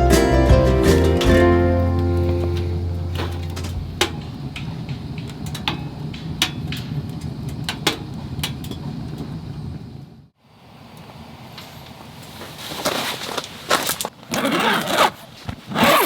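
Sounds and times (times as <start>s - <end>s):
low hum: 0.0s - 6.1s
sharp clicks and knocks: 3.1s - 9.2s.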